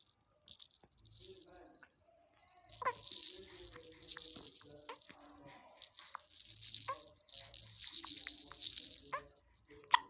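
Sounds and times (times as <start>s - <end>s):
baby rattle toy shaking: 0.0s - 10.0s
baby squeak: 2.8s - 4.0s, 9.1s - 10.0s.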